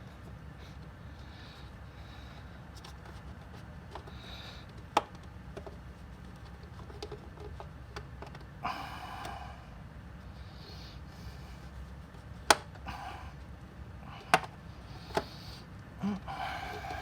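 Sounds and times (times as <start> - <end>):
low steady hum: 0.0 - 17.0
clicks and taps on plastic parts: 3.9 - 8.5, 12.4 - 12.8, 14.2 - 15.3.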